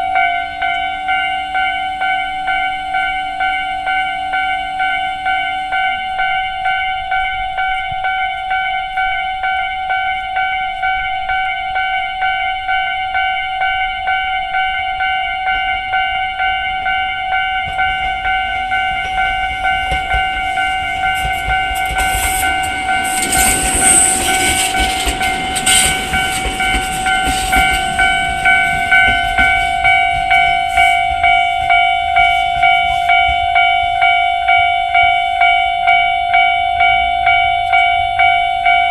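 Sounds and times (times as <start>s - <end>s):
level crossing alarm ringing: 0.0s - 38.9s
train wheels clicking over rails: 17.4s - 33.9s.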